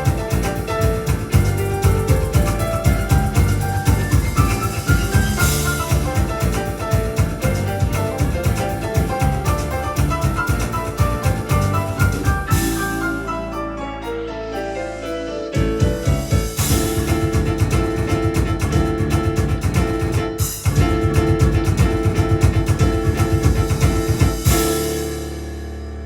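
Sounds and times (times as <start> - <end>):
drum rhythm: 0.0 - 13.8, 15.4 - 25.9.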